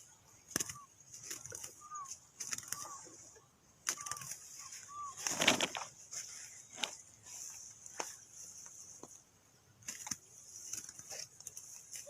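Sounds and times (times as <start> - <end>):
rustle: 0.0 - 12.0
bird call notes: 0.4 - 5.5.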